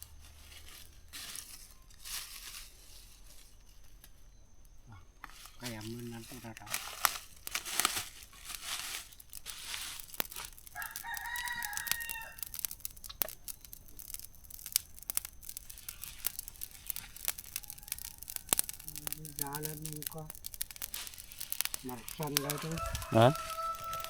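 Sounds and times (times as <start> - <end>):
crackles and rustling: 0.0 - 24.0
rooster crowing: 10.6 - 12.8, 16.8 - 19.4, 21.9 - 24.0.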